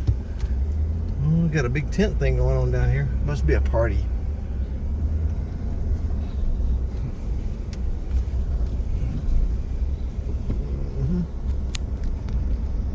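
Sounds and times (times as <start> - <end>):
low steady rumble: 0.0 - 12.9.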